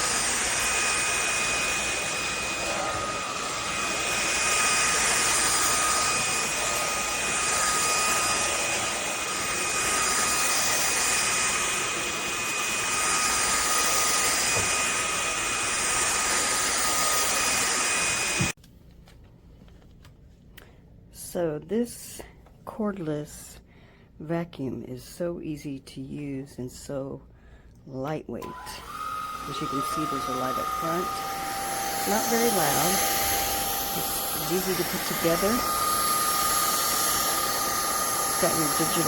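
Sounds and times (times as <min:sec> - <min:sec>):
stick vacuum running: 0:00.0 - 0:18.6, 0:28.4 - 0:39.0.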